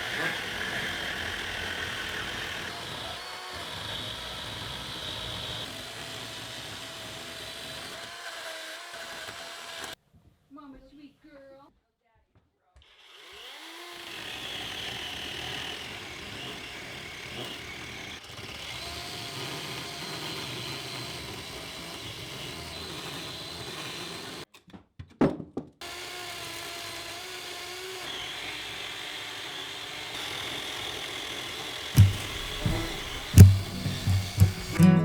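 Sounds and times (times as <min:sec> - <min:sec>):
power tool cutting wood: 0:00.0 - 0:10.0, 0:12.8 - 0:24.5, 0:25.8 - 0:35.0
sharp knocks: 0:32.0 - 0:34.9.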